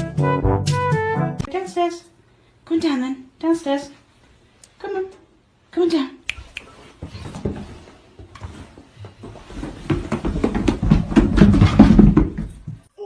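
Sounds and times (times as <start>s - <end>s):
pet thumping down stairs: 7.0s - 12.9s.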